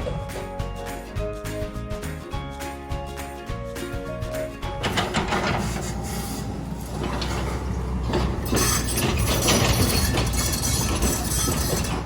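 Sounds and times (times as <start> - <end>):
backhoe engine running: 4.2 - 12.0
metal clanking: 4.6 - 12.0.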